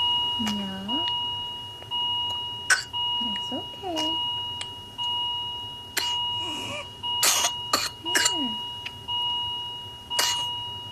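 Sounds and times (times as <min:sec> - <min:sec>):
person coughing: 0:06.0 - 0:08.6, 0:10.2 - 0:10.5.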